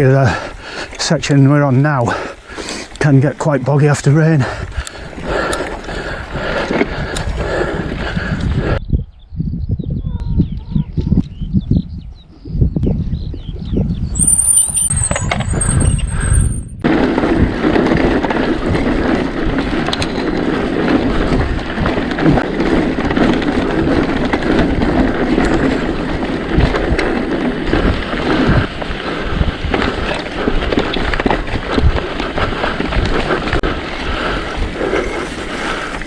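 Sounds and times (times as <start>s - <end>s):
bike brake squealing: 14.2s - 16.8s
bike rattling over rough track: 14.2s - 36.0s.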